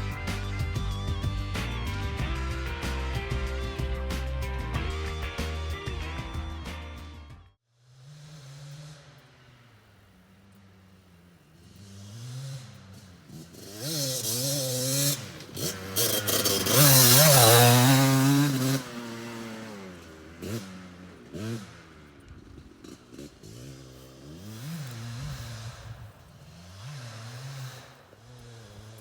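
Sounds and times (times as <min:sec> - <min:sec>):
dirt bike engine revving: 0:00.0 - 0:07.2, 0:07.8 - 0:29.0.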